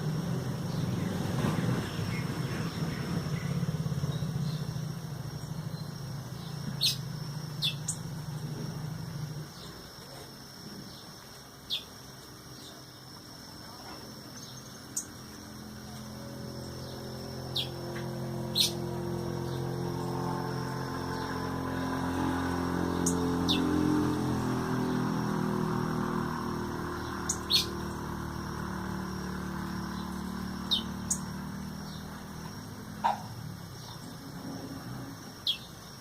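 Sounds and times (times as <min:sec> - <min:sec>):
vehicle passing: 0:00.0 - 0:09.8, 0:14.1 - 0:35.9
high bird chirps: 0:05.4 - 0:08.1, 0:16.7 - 0:17.8, 0:18.5 - 0:19.7, 0:26.8 - 0:28.2, 0:29.7 - 0:32.2.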